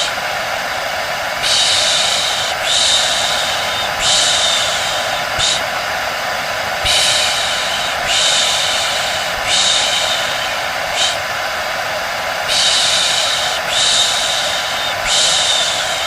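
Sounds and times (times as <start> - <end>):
hair dryer blowing: 0.0 - 16.0
person shushing: 1.4 - 5.8, 6.8 - 11.3, 12.5 - 16.0.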